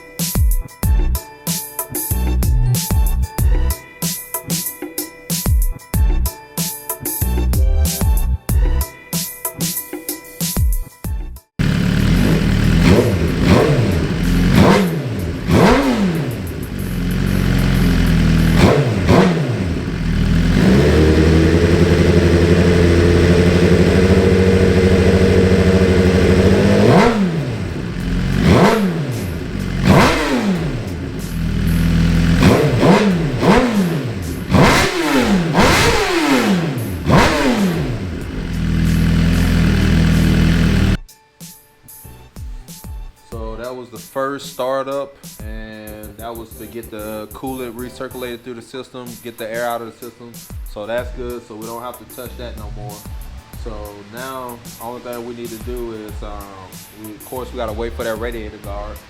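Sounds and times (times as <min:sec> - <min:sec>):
motorcycle engine revving: 0:11.6 - 0:41.0.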